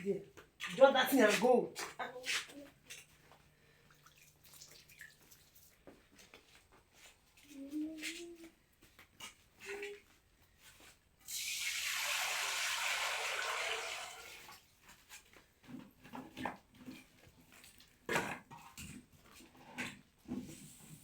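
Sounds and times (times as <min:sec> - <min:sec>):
water pouring: 0:03.9 - 0:05.8, 0:11.3 - 0:14.7.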